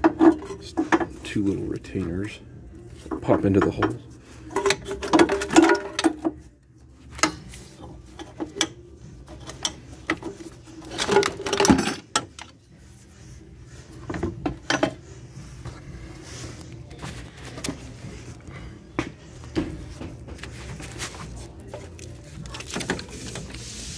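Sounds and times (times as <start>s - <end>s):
metal tools clinking and knocking: 3.1s - 6.4s, 8.1s - 12.6s, 14.1s - 15.0s.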